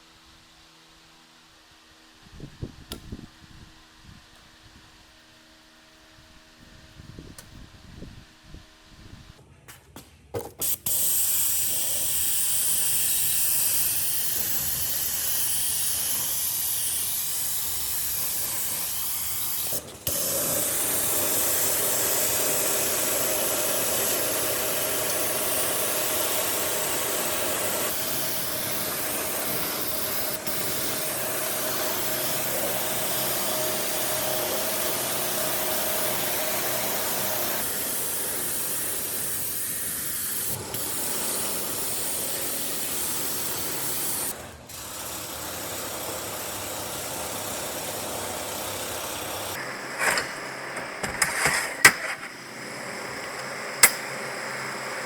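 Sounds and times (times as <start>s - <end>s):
high-pressure spray hissing: 10.6s - 51.2s.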